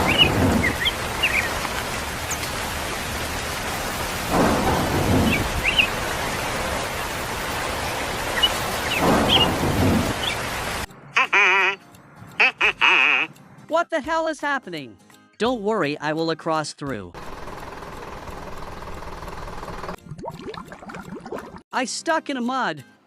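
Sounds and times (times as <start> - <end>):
steady rain: 0.0 - 10.9
low rolls of thunder: 4.2 - 6.9, 9.0 - 10.2.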